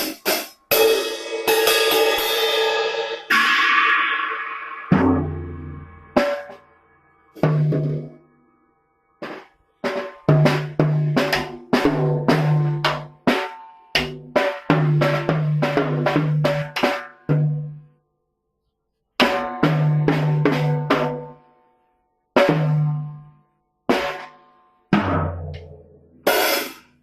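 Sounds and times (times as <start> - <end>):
drum kit hits: 0.0 - 6.6.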